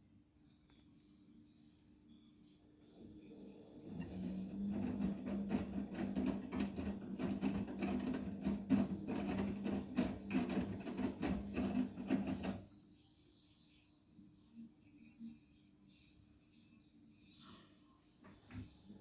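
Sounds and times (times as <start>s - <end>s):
washing machine motor hum: 2.7s - 12.8s
laundry tumbling knocks: 3.9s - 12.7s.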